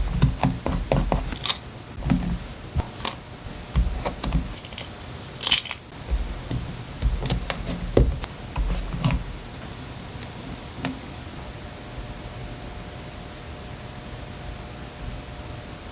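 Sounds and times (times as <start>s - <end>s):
hands tapping and knocking: 0.0s - 4.6s, 5.9s - 9.6s
paper rustling: 0.0s - 9.6s
steady hiss: 0.0s - 14.4s.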